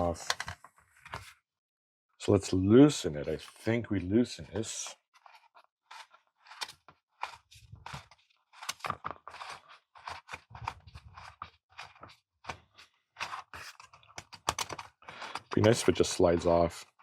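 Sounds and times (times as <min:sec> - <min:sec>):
scrapes and clicks of handled jigsaw: 0:00.0 - 0:01.3, 0:04.6 - 0:17.0.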